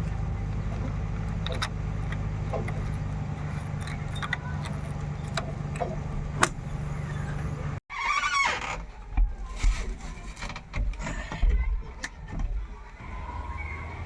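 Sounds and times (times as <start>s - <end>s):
heavy diesel engine running: 0.0s - 7.8s.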